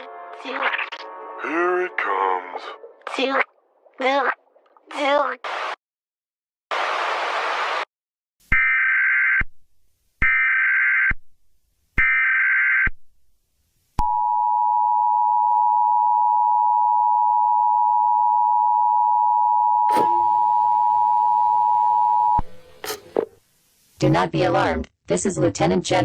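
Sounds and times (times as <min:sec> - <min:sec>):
two-tone attention signal: 0:19.8 - 0:23.0
low static hiss: 0:20.9 - 0:24.5.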